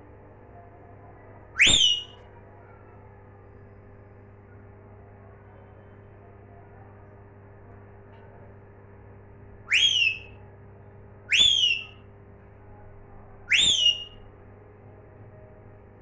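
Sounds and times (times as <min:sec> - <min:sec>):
parrot whistling: 0:01.6 - 0:02.2, 0:09.7 - 0:10.3, 0:11.3 - 0:11.9, 0:13.5 - 0:14.2.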